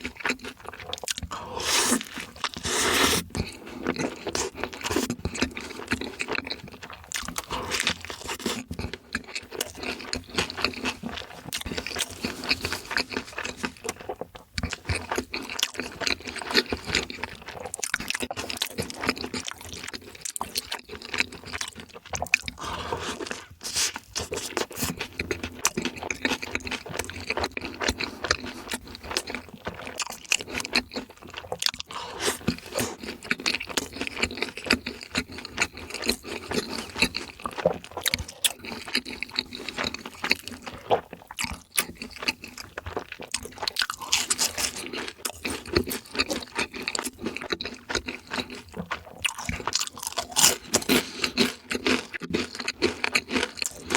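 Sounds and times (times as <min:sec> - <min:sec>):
wet chewing and crunching: 0:00.0 - 0:53.9.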